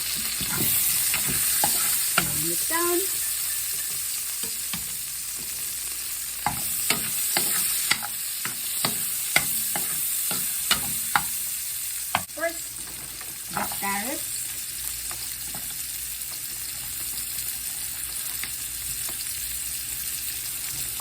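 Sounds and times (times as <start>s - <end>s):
spatula scraping a pan: 0.0s - 11.4s, 12.1s - 14.0s
food sizzling in a wok: 0.0s - 21.0s.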